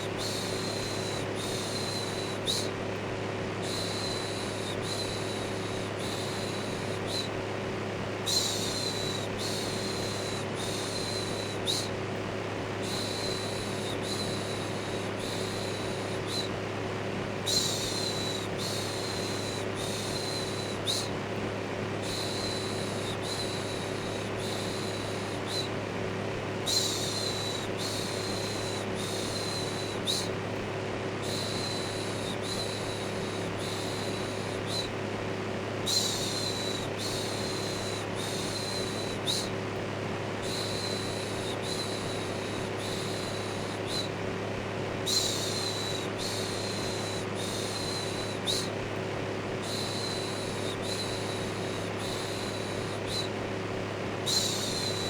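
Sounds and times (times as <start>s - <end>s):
electric fan humming: 0.0s - 55.0s.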